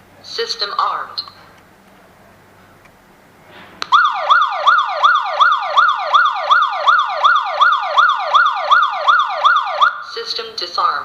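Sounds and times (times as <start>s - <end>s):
electronic alarm siren: 3.9s - 10.1s.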